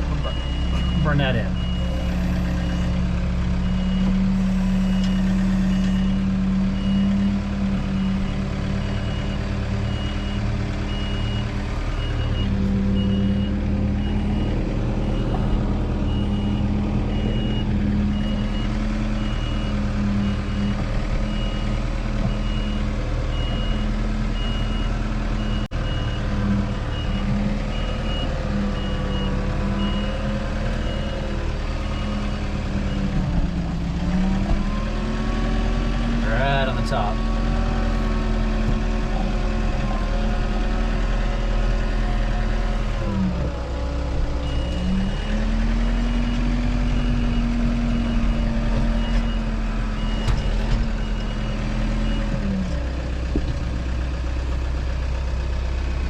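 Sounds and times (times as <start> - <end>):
tractor engine under load: 0.0 - 56.0.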